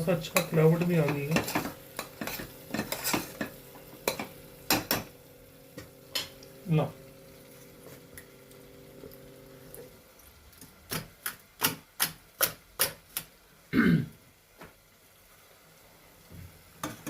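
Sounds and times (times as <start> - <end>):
faint steady hum: 0.0 - 11.6.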